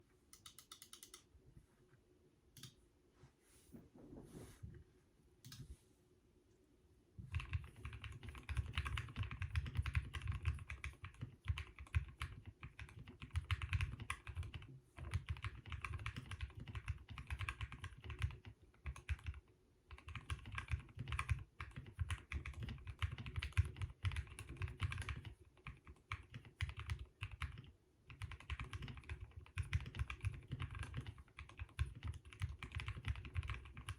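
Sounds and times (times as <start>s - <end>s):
mechanical keyboard typing: 7.3s - 33.9s.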